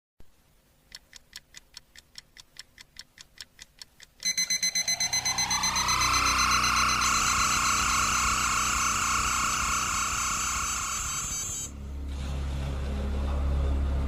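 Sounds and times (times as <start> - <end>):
fast even ticking: 0.8 - 11.7
rising electronic sweep: 4.6 - 11.8.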